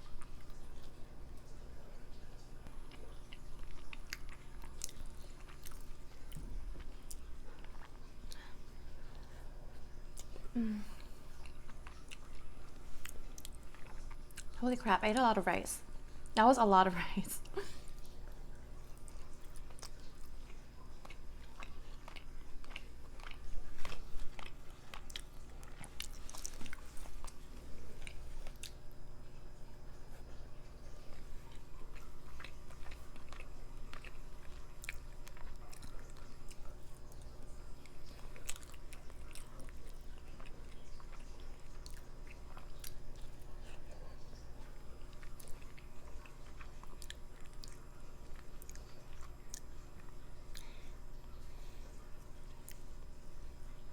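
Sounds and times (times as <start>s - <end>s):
person chewing food: 0.0s - 14.6s, 17.5s - 53.6s.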